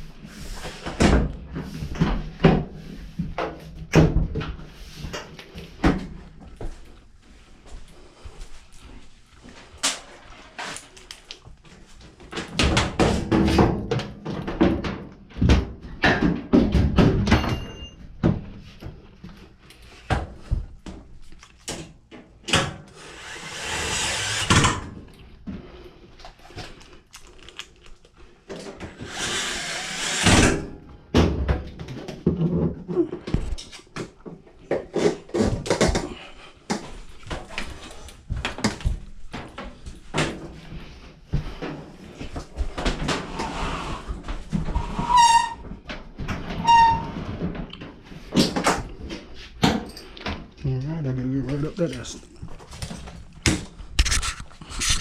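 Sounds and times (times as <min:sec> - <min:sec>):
tools and metal parts clunking: 0:16.1 - 0:18.0.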